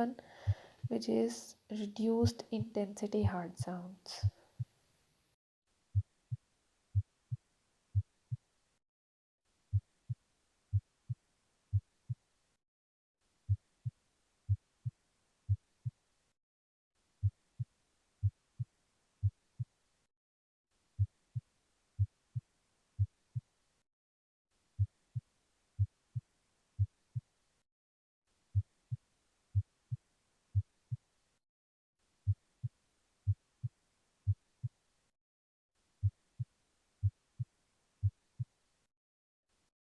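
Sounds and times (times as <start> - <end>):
heartbeat through stethoscope: 0.4 - 0.9, 2.2 - 4.7, 5.9 - 8.4, 9.7 - 12.2, 13.5 - 16.0, 22.0 - 22.4, 34.3 - 34.8.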